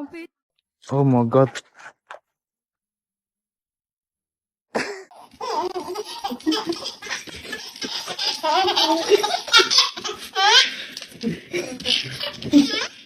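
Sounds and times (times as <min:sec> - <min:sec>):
high-pitched giggling: 0:05.2 - 0:10.8.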